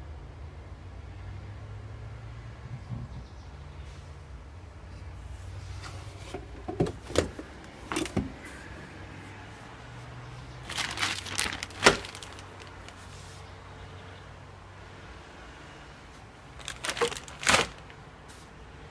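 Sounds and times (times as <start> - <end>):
car engine humming: 5.1 - 15.3.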